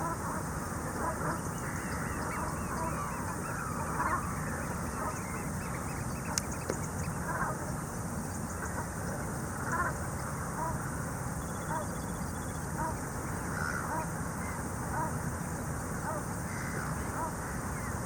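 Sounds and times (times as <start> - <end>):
geese honking: 0.0 - 0.4, 1.0 - 6.4, 10.6 - 10.8.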